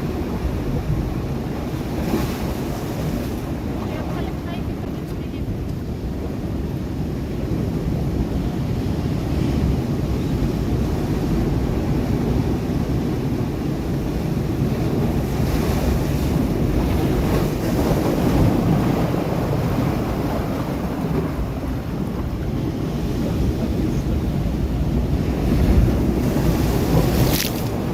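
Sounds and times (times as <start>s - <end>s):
surf rumbling on rocks: 0.0s - 27.9s
wave washing in: 0.0s - 27.9s
wind buffeting microphone: 0.0s - 27.9s.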